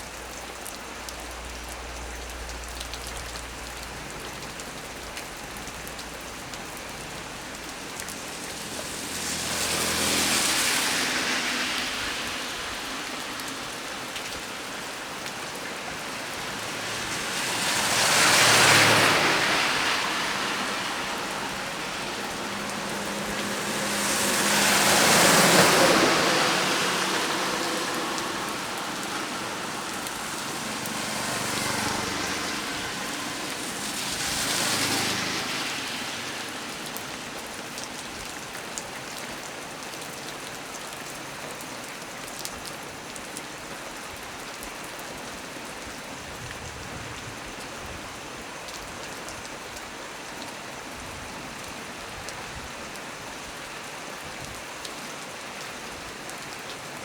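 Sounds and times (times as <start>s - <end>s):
heavy rain: 0.0s - 57.0s
rain drop ticks: 0.3s - 8.2s
rushing surges: 7.8s - 37.8s.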